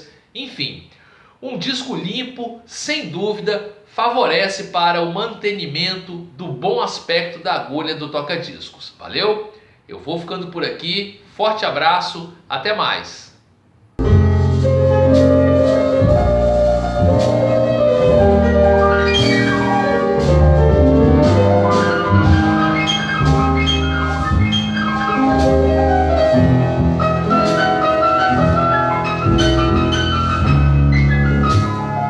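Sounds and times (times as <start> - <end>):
instrumental piano music: 14.0 - 32.0.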